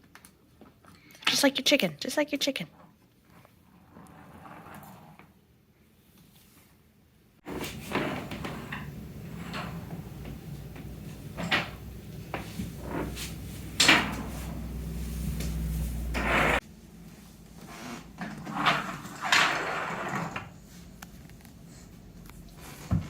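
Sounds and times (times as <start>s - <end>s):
steady low hum: 7.5s - 18.2s.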